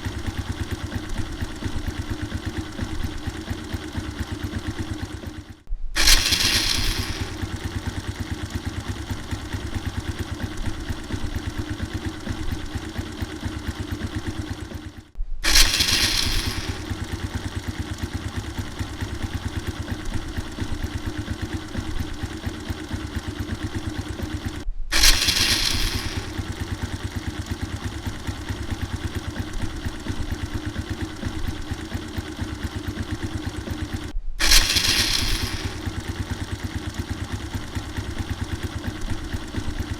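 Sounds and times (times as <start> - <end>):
motorcycle electric starter whirring: 0.0 - 39.9
motorcycle engine idling: 0.0 - 39.9.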